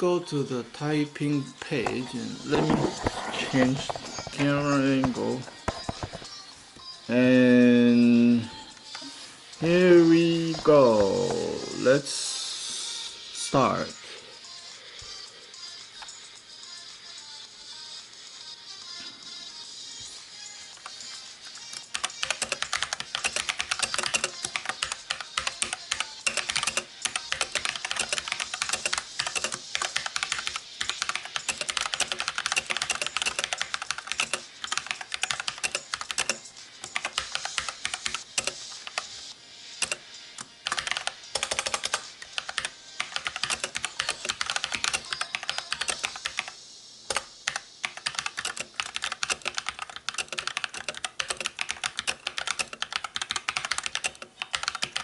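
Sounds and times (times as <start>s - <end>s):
mechanical keyboard typing: 21.7s - 39.1s, 39.8s - 40.0s, 40.6s - 55.0s.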